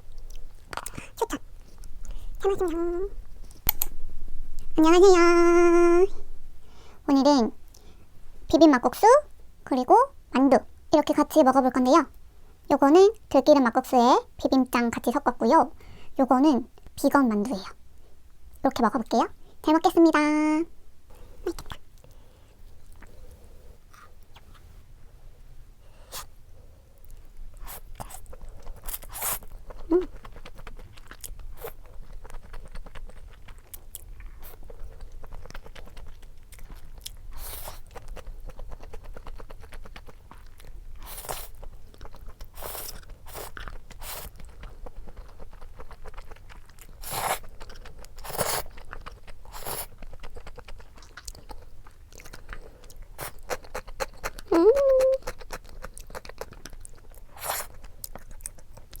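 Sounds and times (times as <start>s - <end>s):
chewing noodles and dumplings: 0.0s - 3.9s, 27.0s - 59.0s
bites and slurps: 27.6s - 59.0s.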